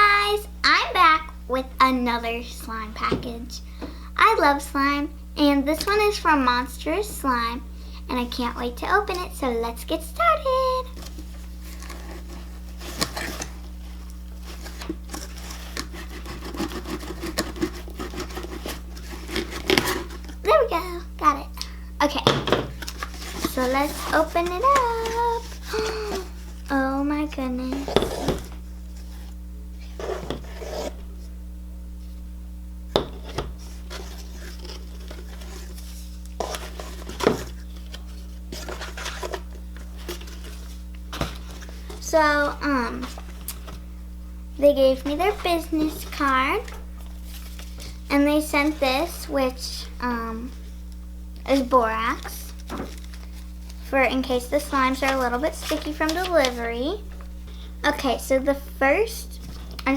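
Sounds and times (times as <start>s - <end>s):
steady low hum: 0.0s - 59.9s
package rustling and tearing: 10.9s - 20.4s, 22.7s - 26.7s, 33.6s - 42.1s, 45.0s - 48.8s, 51.4s - 57.3s.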